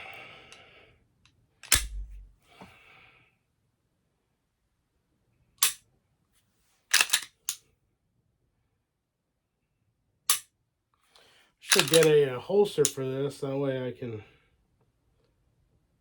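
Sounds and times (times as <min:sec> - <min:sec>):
pistol dry fire clicks: 0:01.6 - 0:02.3, 0:05.6 - 0:05.8, 0:06.9 - 0:07.6, 0:11.7 - 0:12.1
dull thump: 0:01.8 - 0:02.4.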